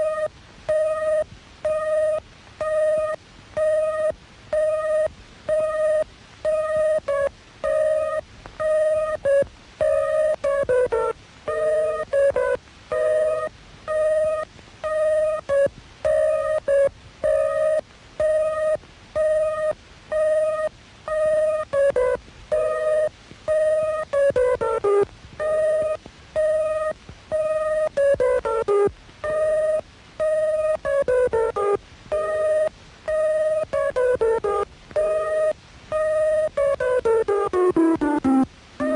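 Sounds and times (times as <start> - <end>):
steady-pitched electronic tone: 0.0 - 38.9
rapid descending beeps: 6.6 - 24.0, 37.1 - 38.9.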